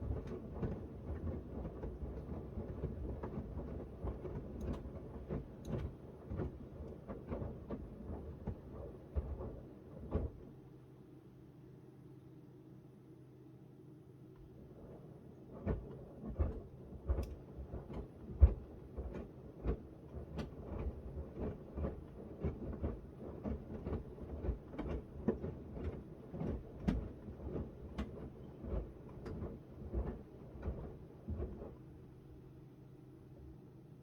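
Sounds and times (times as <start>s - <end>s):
washing machine motor hum: 14.4s - 34.0s.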